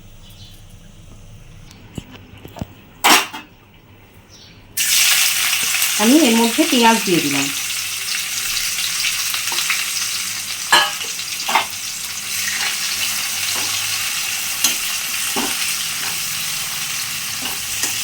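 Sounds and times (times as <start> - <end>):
onion sizzling in oil: 4.8 - 18.0.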